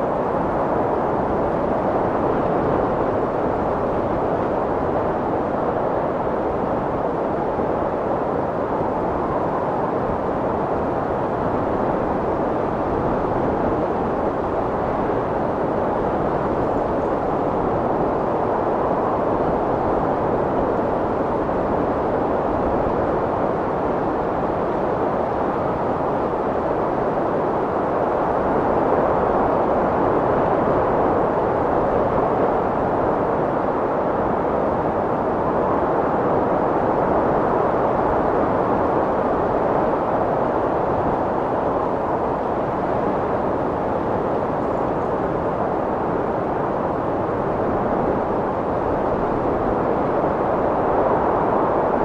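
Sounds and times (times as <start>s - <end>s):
strong wind rushing: 0.0s - 52.0s.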